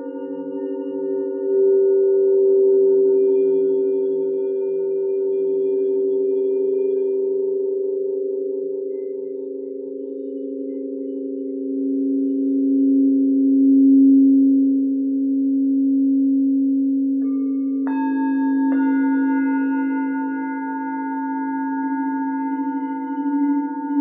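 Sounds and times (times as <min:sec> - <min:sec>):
low singing bowls droning: 0:00.0 - 0:24.0
higher singing bowls struck: 0:17.2 - 0:24.0.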